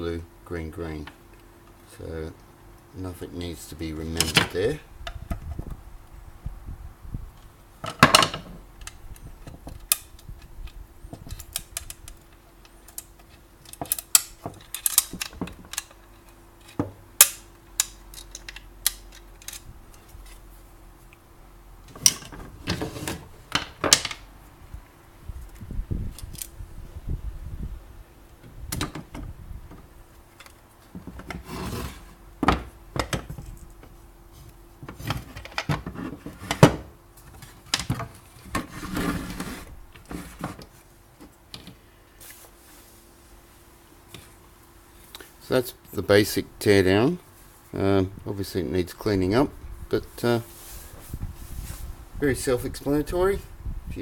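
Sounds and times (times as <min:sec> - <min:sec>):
scraping and rubbing: 0:22.4 - 0:23.4, 0:31.3 - 0:32.2, 0:38.4 - 0:40.8.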